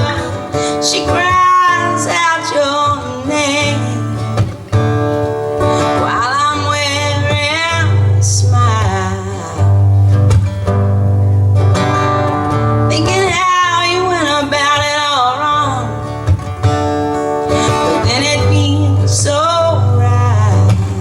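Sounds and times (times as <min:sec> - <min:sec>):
person singing: 0:00.0 - 0:04.2, 0:05.6 - 0:10.0, 0:11.8 - 0:16.2, 0:17.4 - 0:21.0
acoustic guitars strummed and picked: 0:00.0 - 0:21.0.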